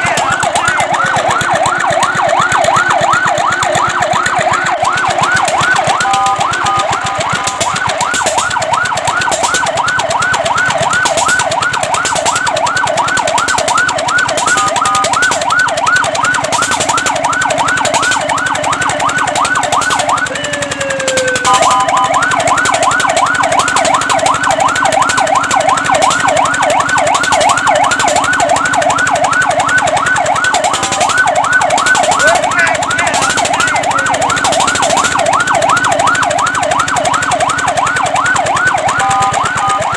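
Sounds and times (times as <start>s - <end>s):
fire truck siren yelping: 0.0s - 39.9s.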